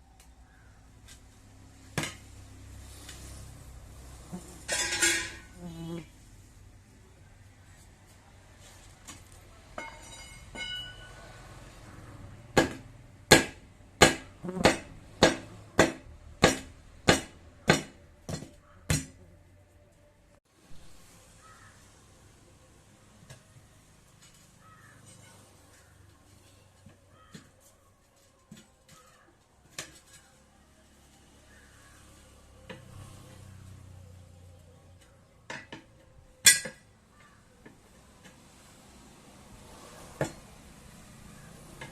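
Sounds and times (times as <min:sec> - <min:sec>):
metal tools clanking: 0:04.7 - 0:05.5, 0:09.8 - 0:11.2
ringing metal clinks: 0:09.8 - 0:11.2.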